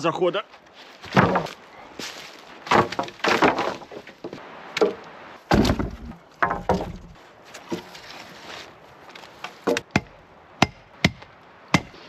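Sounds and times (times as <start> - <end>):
heavy wooden thuds: 1.0 - 1.6, 2.6 - 7.9, 9.6 - 11.9
wooden poles knocking together: 1.0 - 8.2, 9.1 - 10.1.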